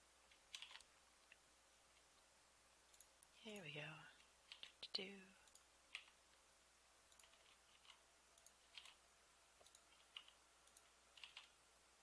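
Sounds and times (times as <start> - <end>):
mouse and keyboard clicks: 0.3 - 1.4, 4.2 - 4.8, 5.4 - 6.2, 7.1 - 9.0, 9.6 - 11.6.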